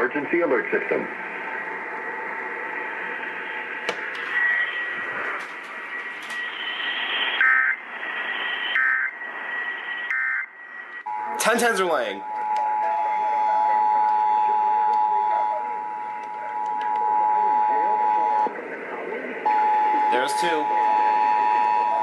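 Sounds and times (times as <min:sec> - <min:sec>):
radio static hiss: 0:00.0 - 0:22.0
warbling data bursts: 0:01.0 - 0:14.8
faint steady whistle: 0:06.4 - 0:18.5, 0:19.4 - 0:22.0.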